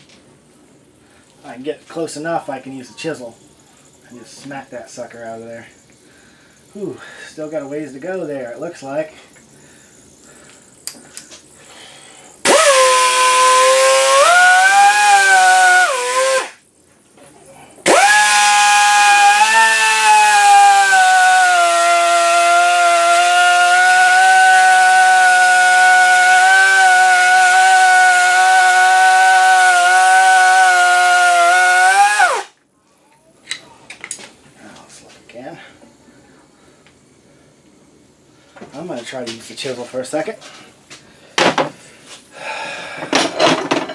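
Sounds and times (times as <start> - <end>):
die grinder whining on steel: 12.4 - 16.6, 17.9 - 32.5.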